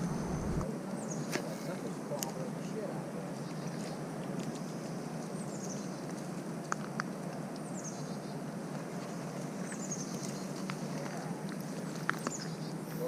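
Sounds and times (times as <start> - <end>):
creek water flowing: 0.0 - 0.6.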